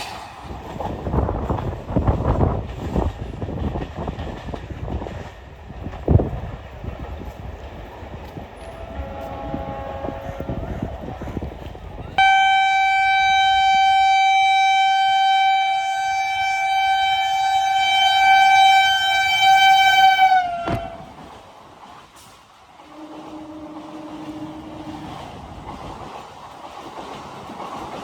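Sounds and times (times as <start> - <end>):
train rumble: 0.0 - 28.0
electric train horn blast: 8.6 - 11.3, 12.2 - 21.2, 22.9 - 25.3.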